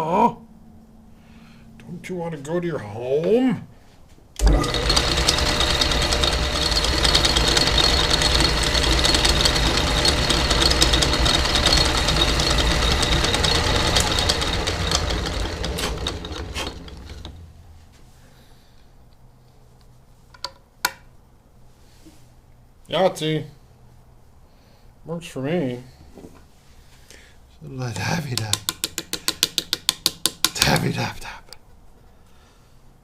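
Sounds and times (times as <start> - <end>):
lathe motor running: 4.4 - 17.6.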